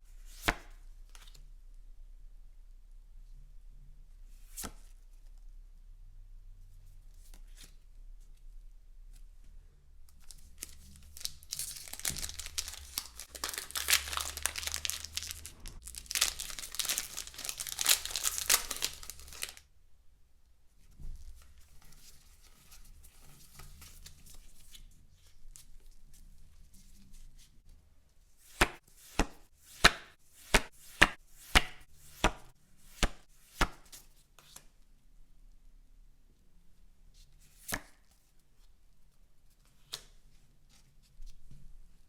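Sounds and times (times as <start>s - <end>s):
plastic packaging tearing and crinkling: 10.4s - 19.6s.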